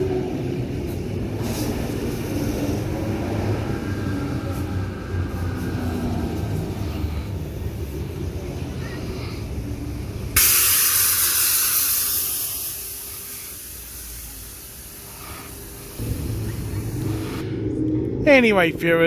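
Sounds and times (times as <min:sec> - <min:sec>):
train low rumble: 0:00.0 - 0:19.0
compressed air hiss: 0:00.9 - 0:03.4, 0:10.3 - 0:17.5.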